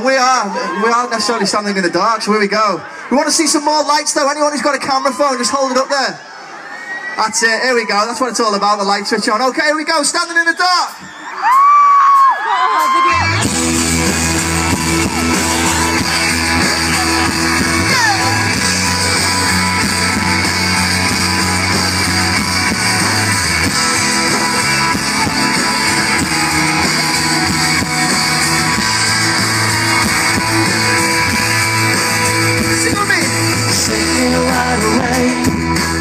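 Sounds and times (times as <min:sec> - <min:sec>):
live pop-rock band playing: 0:10.9 - 0:36.0
electric guitar: 0:13.0 - 0:36.0
bass line: 0:13.1 - 0:36.0.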